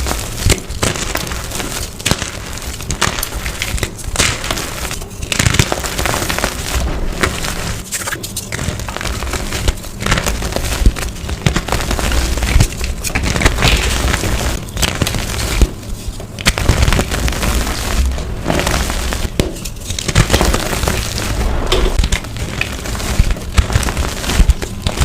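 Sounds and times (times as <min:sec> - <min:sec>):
chalk crunching: 0:00.0 - 0:25.0.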